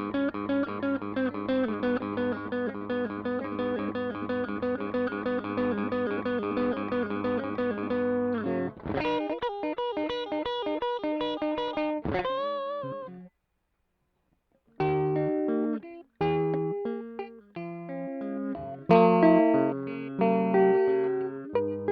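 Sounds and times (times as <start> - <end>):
overdriven electric guitar riff: 0.0 - 13.3, 14.8 - 21.9.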